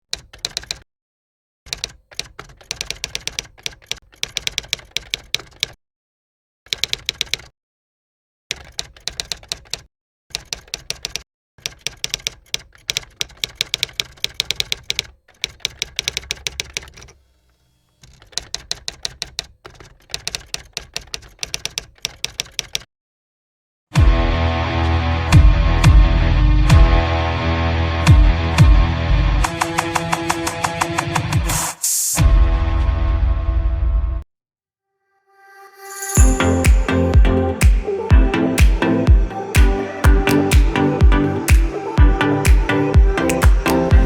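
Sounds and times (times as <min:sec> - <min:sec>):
typewriter keys clacking: 0:01.7 - 0:05.8, 0:08.5 - 0:17.1, 0:18.0 - 0:22.9.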